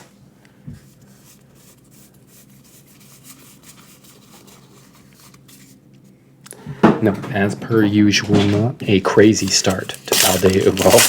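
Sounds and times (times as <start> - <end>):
cards sliding and rubbing: 9.4 - 11.0.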